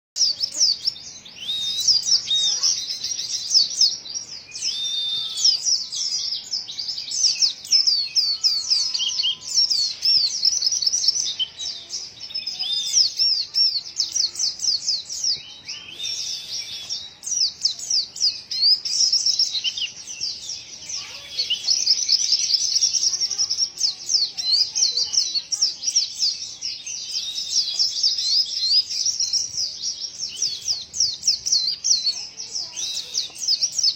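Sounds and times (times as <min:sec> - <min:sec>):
bird twittering song: 0:00.2 - 0:33.9.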